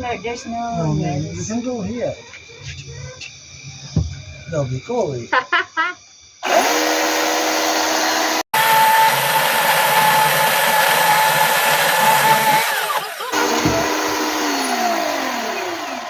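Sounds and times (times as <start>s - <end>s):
chainsaw cutting wood: 6.4s - 16.0s.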